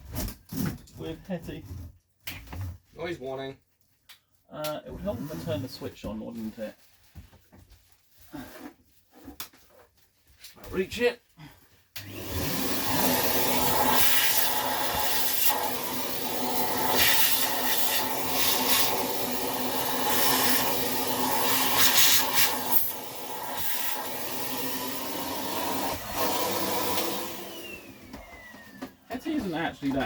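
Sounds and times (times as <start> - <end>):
vacuum cleaner suction rush: 12.0 - 28.9
vacuum motor spinning down: 12.0 - 28.9.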